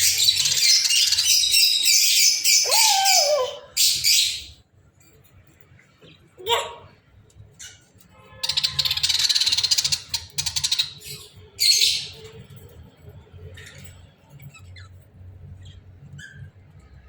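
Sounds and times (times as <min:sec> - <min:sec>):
harsh bird squawk: 0:02.4 - 0:04.3.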